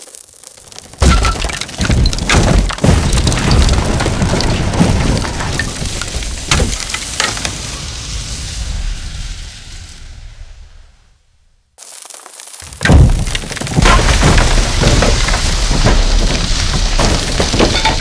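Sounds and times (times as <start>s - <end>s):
rubble tumbling down: 0.0s - 9.1s, 11.8s - 18.0s
heavy crash: 1.0s - 11.6s, 12.6s - 18.0s
low rumble: 3.3s - 11.8s.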